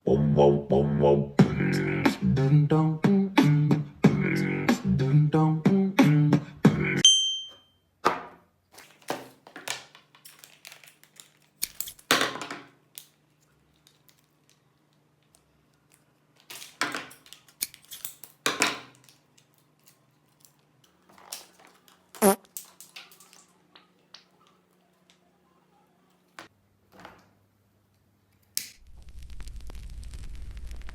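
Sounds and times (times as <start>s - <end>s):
music with vocal beat: 0.0s - 7.0s
squeeze bottle spluttering: 22.2s - 23.5s.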